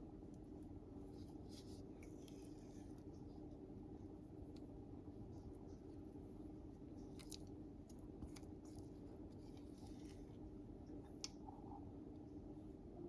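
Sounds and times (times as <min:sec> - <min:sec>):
steady low hum: 0:00.0 - 0:13.0
soft kitchen clicks and scrapes: 0:01.0 - 0:03.6, 0:04.5 - 0:11.9.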